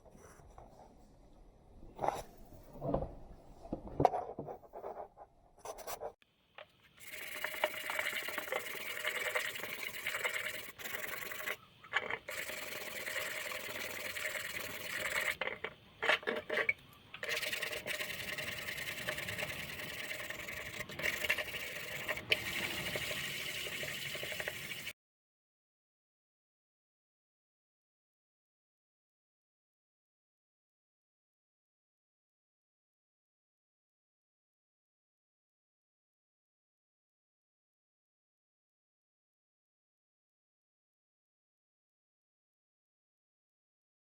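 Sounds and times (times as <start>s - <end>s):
rubbing and scraping: 6.9s - 24.9s.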